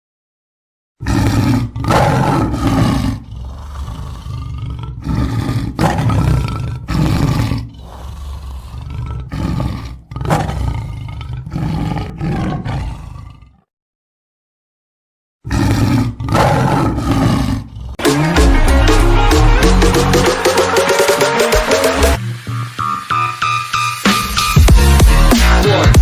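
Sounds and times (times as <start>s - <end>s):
big cat roaring and growling: 1.0s - 13.7s, 15.4s - 20.3s.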